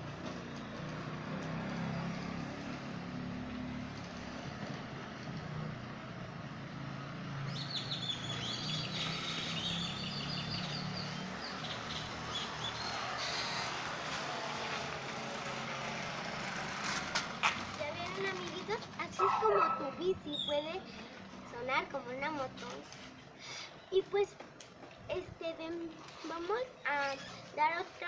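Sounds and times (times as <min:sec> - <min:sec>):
bird chirping: 0:07.5 - 0:13.6, 0:20.3 - 0:21.1.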